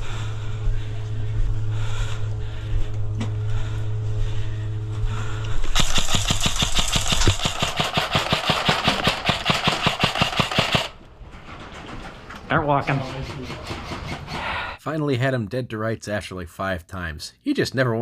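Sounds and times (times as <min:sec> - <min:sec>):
low hum: 0:00.0 - 0:14.8
airsoft gun full auto fire: 0:05.7 - 0:11.0.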